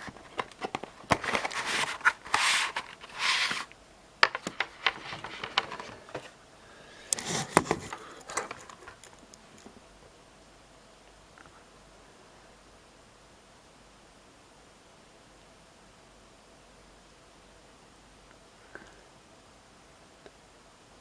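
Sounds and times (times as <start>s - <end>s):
packaging clicks and scrapes: 0.0s - 6.4s, 7.1s - 9.7s.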